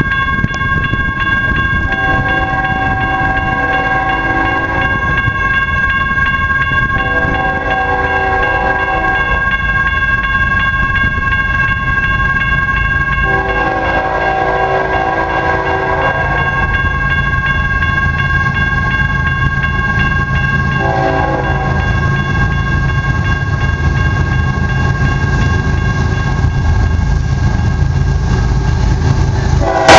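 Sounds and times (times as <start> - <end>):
passing train rumble: 0.0 - 29.9
locomotive air horn: 1.9 - 4.9, 7.0 - 9.3, 13.2 - 16.6, 20.8 - 21.8, 29.6 - 29.9.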